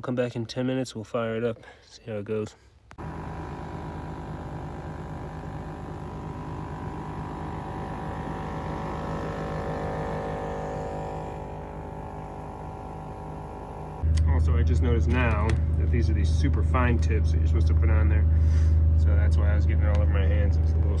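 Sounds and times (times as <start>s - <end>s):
air compressor humming: 2.9s - 14.1s.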